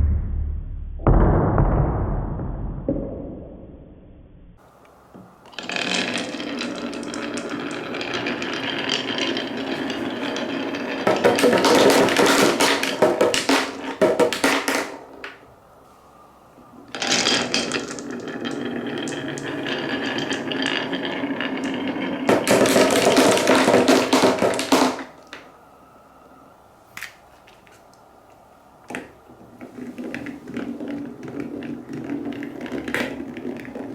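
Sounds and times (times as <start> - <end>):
marbles rolling on wooden track: 5.4 - 15.4, 16.9 - 25.5, 29.5 - 33.9
marbles clattering: 5.5 - 15.4, 16.9 - 25.5.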